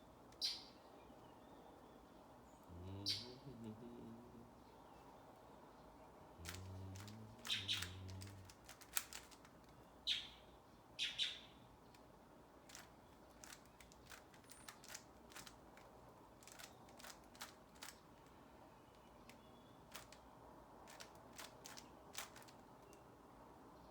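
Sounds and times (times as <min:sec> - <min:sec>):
plastic cube clicking: 0:06.4 - 0:09.8, 0:12.7 - 0:18.1, 0:19.9 - 0:20.2, 0:20.9 - 0:23.0.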